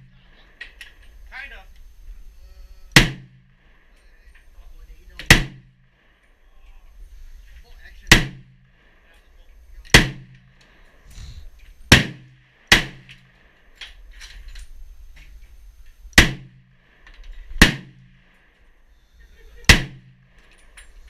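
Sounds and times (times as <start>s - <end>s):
gunshots: 2.9s - 3.9s, 5.2s - 6.2s, 8.0s - 9.0s, 9.9s - 10.8s, 11.9s - 13.6s, 16.2s - 18.3s, 19.6s - 20.5s.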